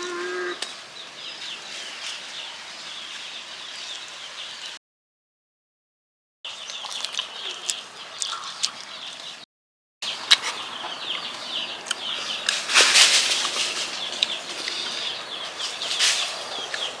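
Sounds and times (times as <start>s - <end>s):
chickens clucking and chirping: 0.0s - 4.7s, 10.0s - 17.0s.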